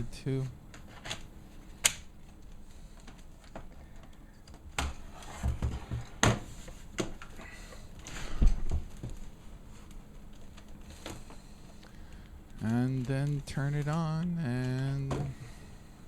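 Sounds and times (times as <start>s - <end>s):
plastic clicks and knocks: 13.0s - 15.5s.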